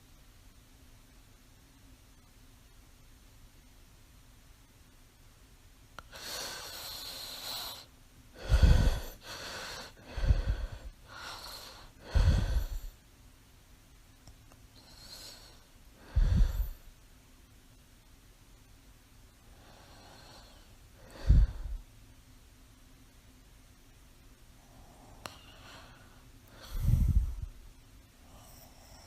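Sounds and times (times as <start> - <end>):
woman breathing in sleep: 6.0 - 13.0, 14.8 - 16.9, 19.4 - 21.9, 24.6 - 27.6, 28.2 - 29.0.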